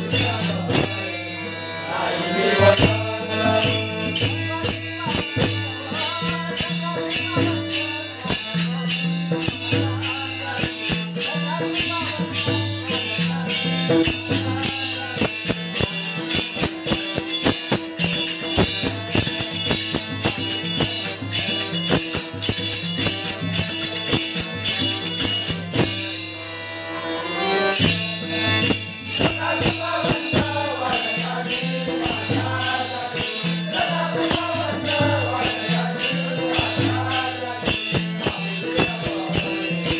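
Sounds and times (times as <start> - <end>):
hand cymbals struck: 0.0 - 1.4, 2.6 - 26.5, 27.7 - 39.9
drum beats: 14.0 - 26.0, 27.8 - 39.9
steady held tone: 27.6 - 39.9
person singing: 29.0 - 39.9.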